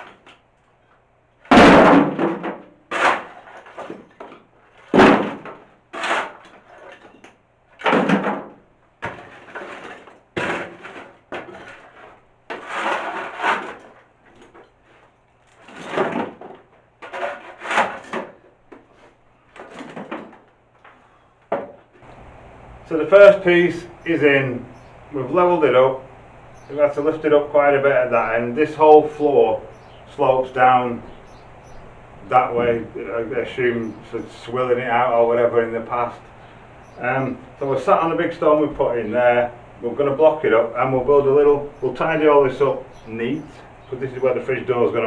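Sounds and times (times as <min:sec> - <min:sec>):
shovel scraping rubble: 0:01.5 - 0:07.2, 0:09.0 - 0:18.4.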